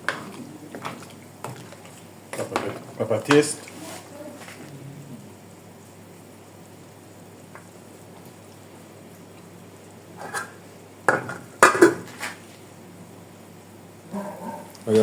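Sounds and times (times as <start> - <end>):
utensil clattering in cooking pot: 10.2 - 12.1.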